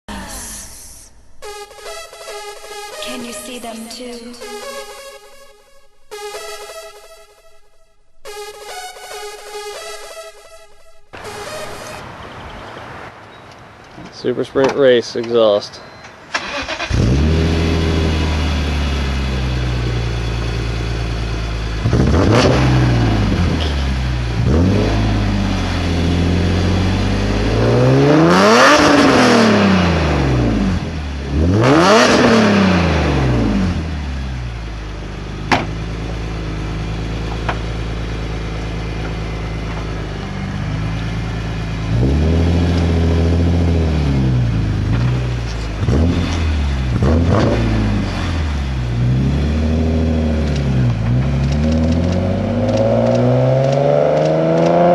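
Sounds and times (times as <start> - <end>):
car engine idling and revving: 16.0 - 54.9.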